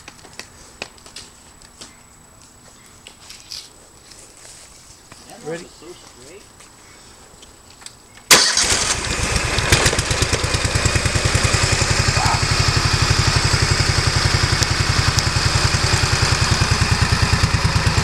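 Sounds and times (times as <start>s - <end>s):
sawmill engine running: 8.3s - 18.0s.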